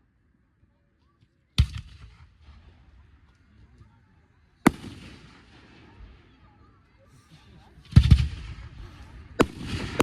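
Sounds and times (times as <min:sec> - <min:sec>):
firework sharp bangs: 0:07.9 - 0:10.0.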